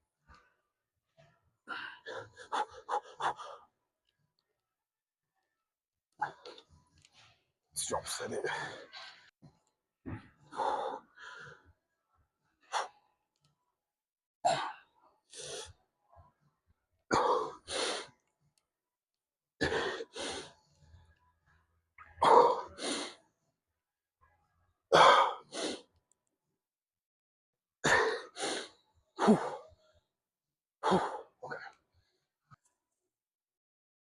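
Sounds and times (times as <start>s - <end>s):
man breathing hard: 10.4s - 11.7s.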